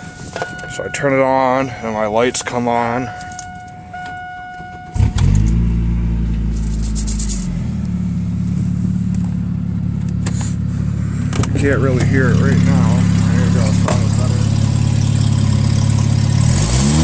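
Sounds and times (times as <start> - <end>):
pickup engine starting and idling: 0.0 - 17.0
electronic warning tone: 3.0 - 5.2.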